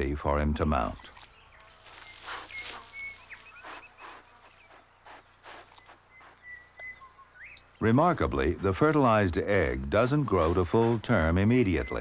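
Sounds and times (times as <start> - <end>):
faint bird chirps: 0.8 - 8.0
kangaroos rustling in grass: 1.1 - 8.5, 10.2 - 12.0.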